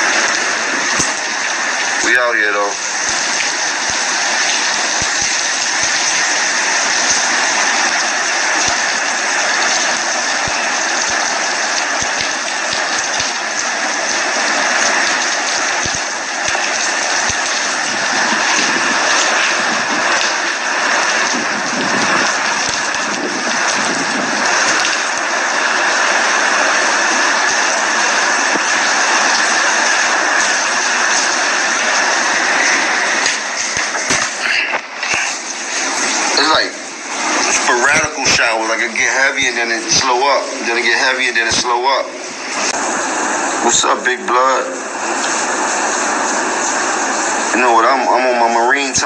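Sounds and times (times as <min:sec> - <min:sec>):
heavy rain rushing: 0:00.0 - 0:49.0.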